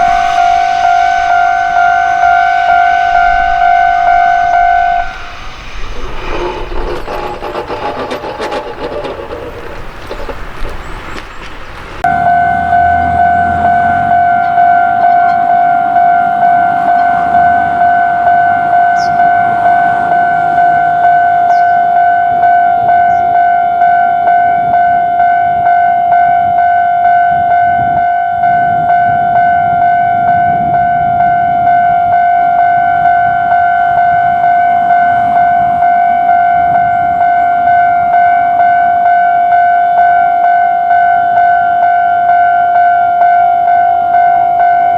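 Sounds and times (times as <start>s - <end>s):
level-crossing alarm ringing: 0.0s - 11.1s, 12.0s - 44.9s
noise: 0.0s - 12.1s.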